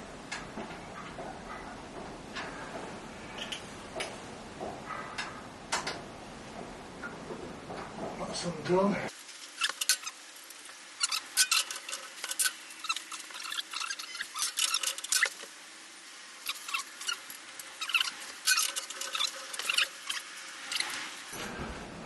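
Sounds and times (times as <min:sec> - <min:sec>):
metal parts clicking and scraping: 0:11.0 - 0:15.5, 0:16.4 - 0:21.1.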